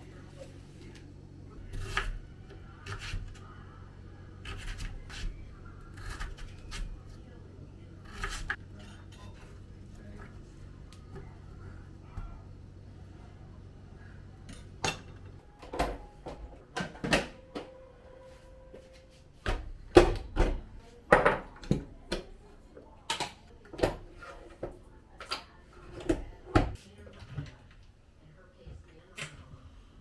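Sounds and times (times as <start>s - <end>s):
low steady hum: 0.0s - 30.0s
kitchenware knocking and clinking: 19.5s - 22.2s.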